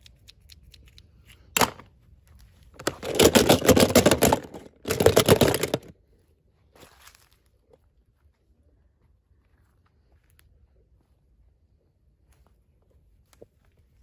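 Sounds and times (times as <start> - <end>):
toy packaging clicks: 0.0 - 1.8, 2.8 - 5.9.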